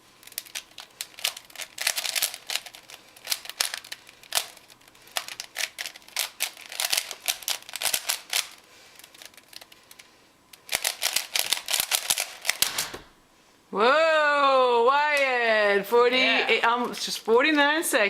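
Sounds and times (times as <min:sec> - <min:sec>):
plastic puzzle cube clicking: 0:00.2 - 0:04.6, 0:05.2 - 0:12.6.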